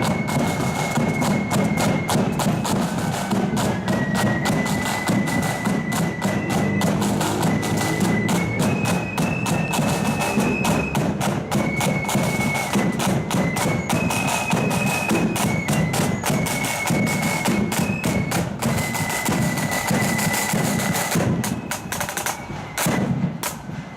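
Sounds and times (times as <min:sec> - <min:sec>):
flutes playing melody: 0:00.0 - 0:23.9
rapid snare drumming: 0:00.0 - 0:23.9.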